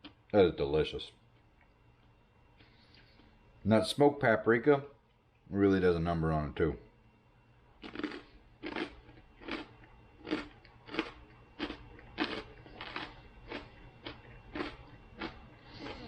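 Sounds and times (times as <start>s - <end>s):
person chewing crunchy chip: 7.8s - 16.0s.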